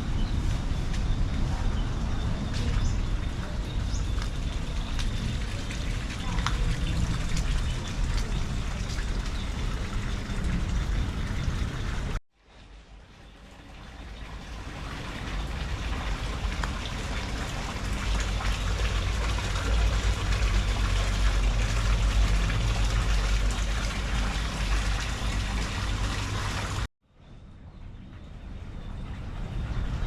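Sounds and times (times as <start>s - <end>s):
wind buffeting microphone: 0.0s - 12.2s
heavy rain hissing: 14.6s - 26.9s.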